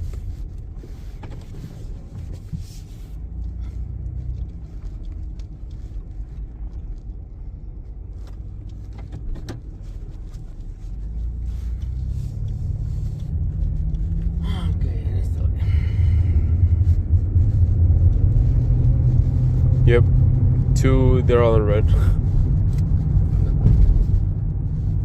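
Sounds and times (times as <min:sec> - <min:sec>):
car road and drivetrain rumble: 0:00.0 - 0:25.0.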